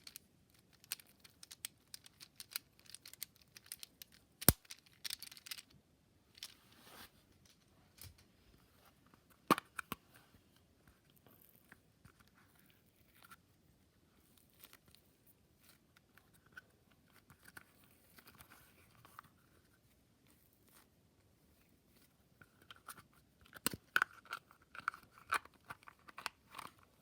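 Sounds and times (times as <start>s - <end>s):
small objects clicking and rustling: 0.0s - 6.6s.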